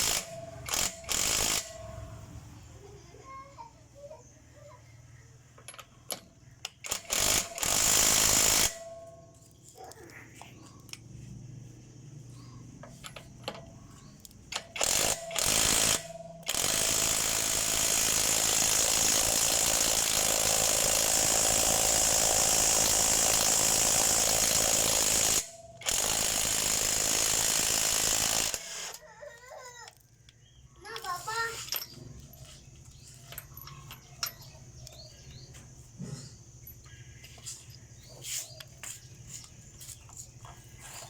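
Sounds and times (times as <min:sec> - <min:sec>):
impact wrench hammering: 0:00.0 - 0:02.1, 0:05.6 - 0:09.3, 0:14.5 - 0:28.9.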